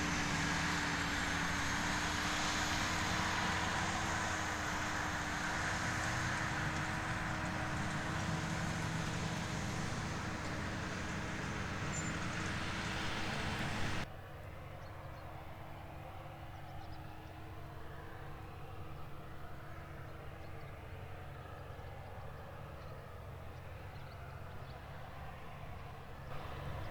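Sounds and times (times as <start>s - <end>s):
distant tractor engine: 0.0s - 14.0s, 26.3s - 26.9s
tractor engine under load: 0.0s - 14.1s, 26.3s - 26.9s.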